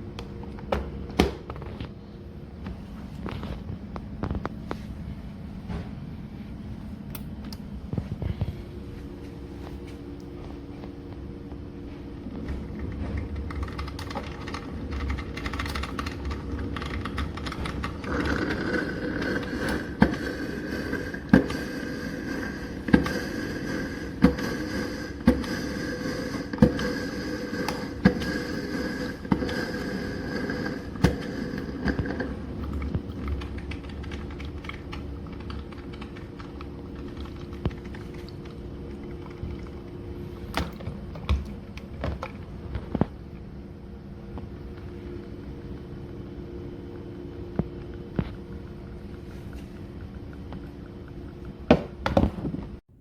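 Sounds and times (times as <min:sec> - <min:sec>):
coffee maker hum and hiss: 0:00.0 - 0:53.0
coffee maker sharp pops: 0:00.7 - 0:01.6, 0:51.7 - 0:52.5.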